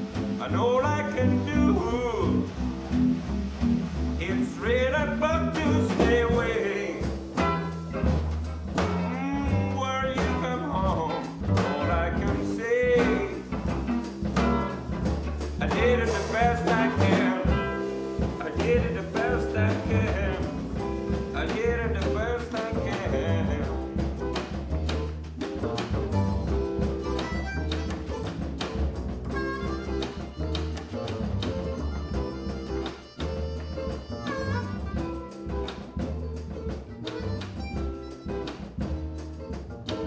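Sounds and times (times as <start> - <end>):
deep bass line: 0.0 - 40.0
guitar: 0.0 - 40.0
wavering lead melody: 26.2 - 39.6.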